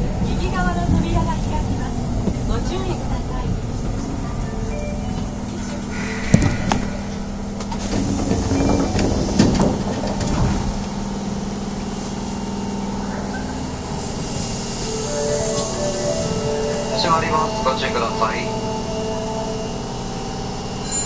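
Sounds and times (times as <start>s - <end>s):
train equipment hum: 0.0s - 21.0s
train doors clunk: 3.4s - 11.2s
clattering knocks: 7.6s - 10.7s.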